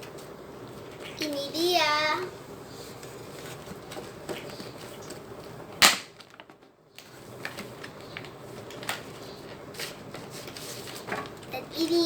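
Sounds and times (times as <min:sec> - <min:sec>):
package rustling and clicking: 0:03.8 - 0:11.5
sharp snap: 0:05.8 - 0:06.2.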